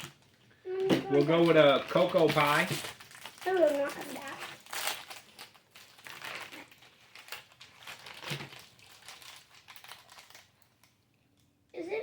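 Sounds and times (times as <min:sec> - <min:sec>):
plastic wrapper crinkling: 0:00.0 - 0:11.8.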